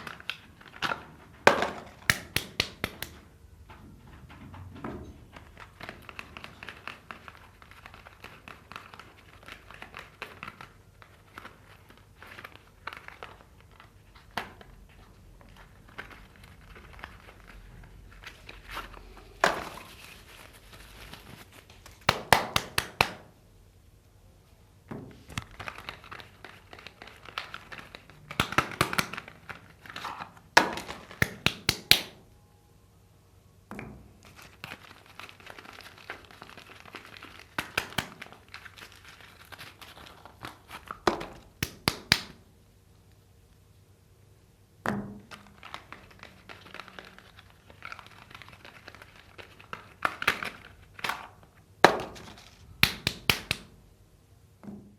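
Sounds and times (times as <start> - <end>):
wrappers crinkling and tearing: 5.6 - 22.1, 25.4 - 31.2, 34.3 - 41.5, 45.3 - 52.8.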